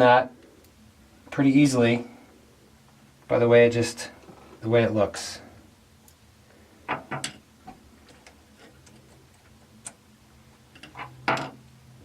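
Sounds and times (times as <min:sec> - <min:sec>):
small hard parts clicking: 0:10.7 - 0:11.6.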